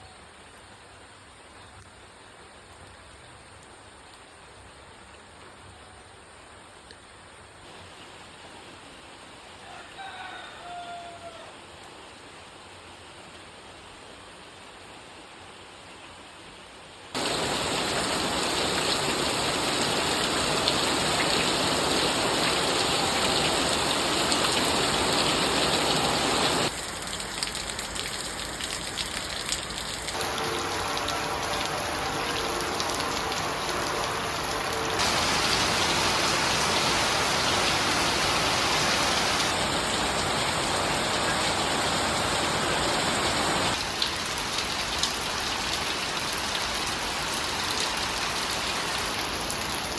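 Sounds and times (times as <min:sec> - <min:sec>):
rain falling: 0:11.2 - 0:49.9.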